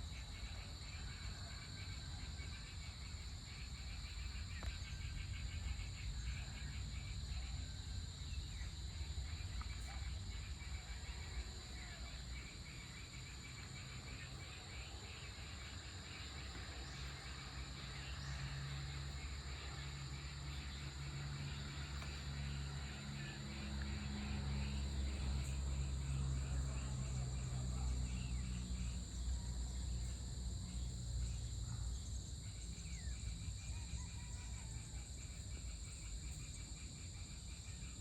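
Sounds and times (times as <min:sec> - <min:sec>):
insects trilling: 0:00.0 - 0:38.0
low drone: 0:16.3 - 0:29.4.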